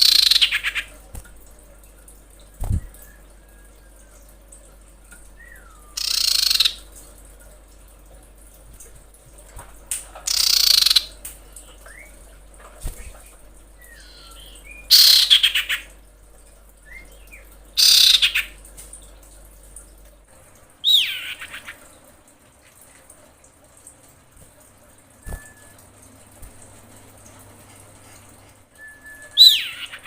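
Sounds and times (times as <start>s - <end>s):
bird harsh calls: 0.0s - 0.9s, 5.5s - 6.8s, 10.3s - 11.1s, 13.9s - 15.9s, 17.8s - 18.6s, 20.8s - 21.8s, 29.4s - 30.0s.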